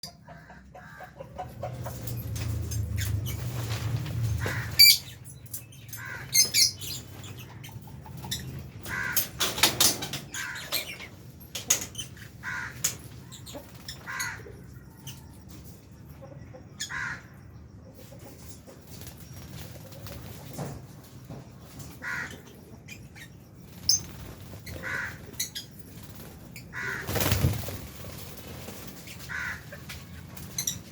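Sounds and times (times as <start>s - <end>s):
lovebirds chirping and shrieking: 0.0s - 20.6s, 21.2s - 30.9s
wings rustling: 26.0s - 29.6s.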